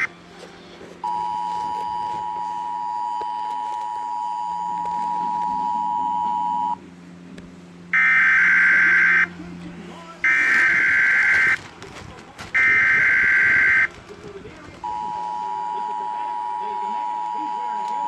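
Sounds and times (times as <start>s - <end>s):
two-tone alert signal: 1.0s - 6.8s, 10.2s - 11.6s, 12.6s - 13.9s.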